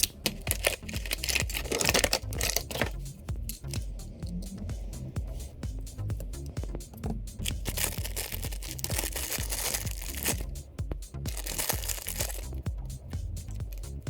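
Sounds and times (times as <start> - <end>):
packaging rustling and tearing: 0.0 - 3.0, 7.4 - 10.5, 11.3 - 12.5
electronic music with steady beat: 0.0 - 14.0.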